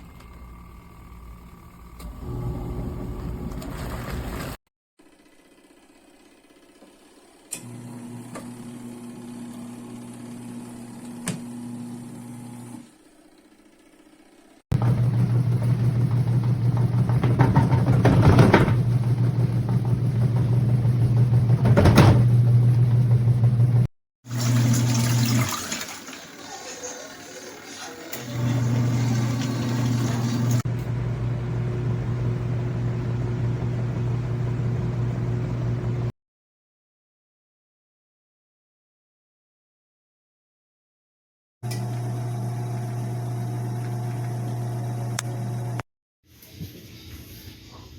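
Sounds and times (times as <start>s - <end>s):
electric motor humming: 28.1s - 36.1s.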